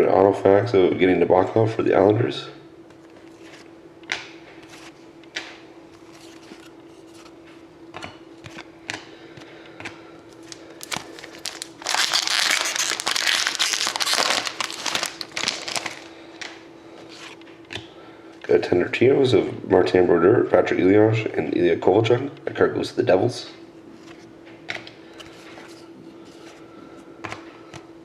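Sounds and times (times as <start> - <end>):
foil wrapper crinkling: 10.3 - 17.4.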